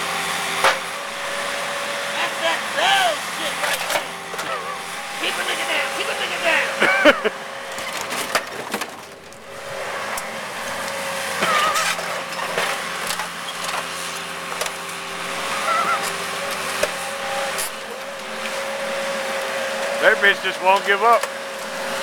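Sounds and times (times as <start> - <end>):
excavator running with a whine: 0.0 - 22.0
short squeals: 11.4 - 12.0, 15.4 - 16.2.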